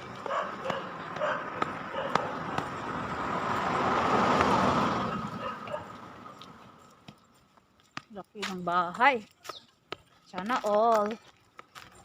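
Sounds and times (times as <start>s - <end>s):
car passing by: 0.4s - 7.0s.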